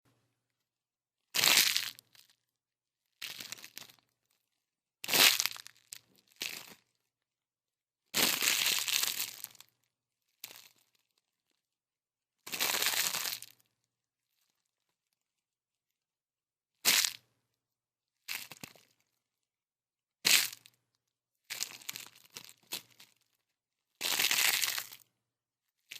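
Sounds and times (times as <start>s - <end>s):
plastic crunching and crackling: 21.5s - 23.3s, 24.0s - 25.0s.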